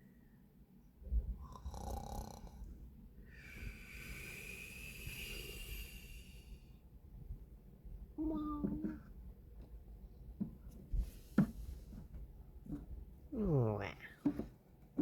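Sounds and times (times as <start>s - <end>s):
person snoring: 1.4s - 2.7s
whistling breath: 3.3s - 6.7s.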